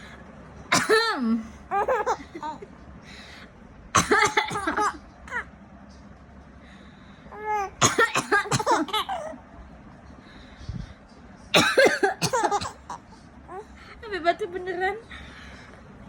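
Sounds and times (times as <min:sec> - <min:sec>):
adult coughing: 0:00.7 - 0:02.6, 0:04.0 - 0:05.5, 0:07.8 - 0:09.4, 0:11.5 - 0:13.1
baby laughing: 0:01.7 - 0:02.7.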